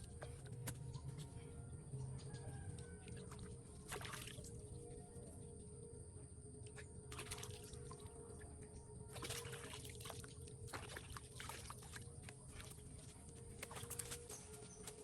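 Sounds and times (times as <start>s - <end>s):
water splashing and trickling: 3.0s - 4.8s, 7.0s - 15.0s.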